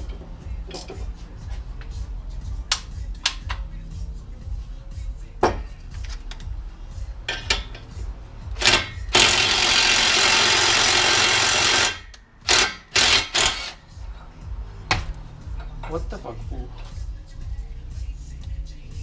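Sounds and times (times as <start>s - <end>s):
loud power tool noise: 8.6s - 13.8s.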